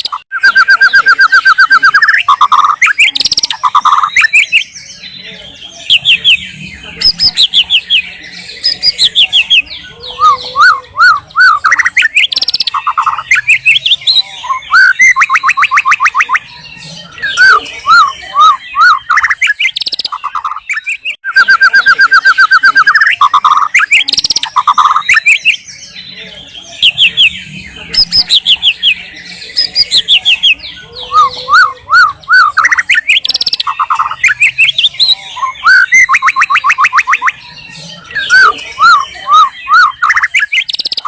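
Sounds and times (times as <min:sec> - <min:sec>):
songbird singing whistled phrases: 0:00.0 - 0:41.0.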